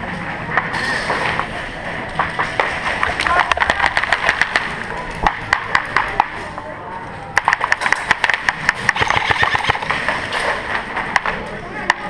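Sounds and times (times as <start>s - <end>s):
airsoft guns firing: 7.4s - 10.2s.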